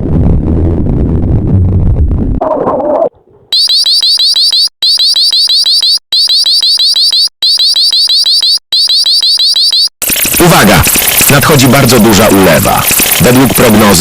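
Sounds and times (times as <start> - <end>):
high rising alert chirps: 3.5 - 10.3.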